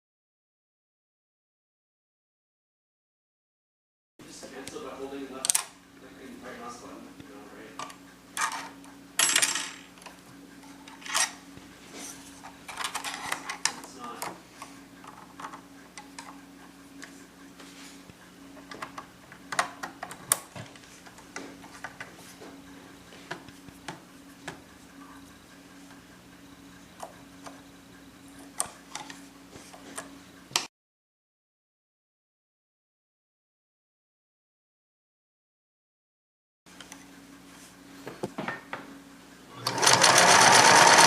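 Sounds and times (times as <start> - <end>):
steady low hum: 4.2 - 30.6
sewing machine parts clicking: 39.6 - 41.0.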